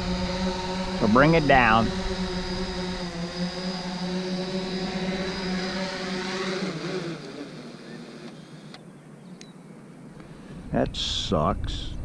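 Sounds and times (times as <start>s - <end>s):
drone propellers humming: 0.0s - 9.2s.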